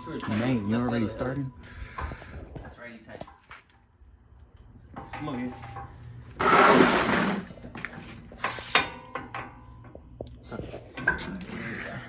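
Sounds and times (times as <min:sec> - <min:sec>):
harsh metal scraping: 0:05.4 - 0:07.6.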